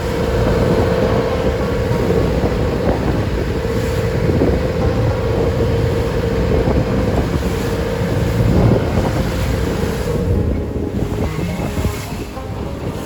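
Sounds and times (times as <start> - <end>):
boat engine humming: 0.0 - 13.0
wind buffeting microphone: 0.0 - 13.0.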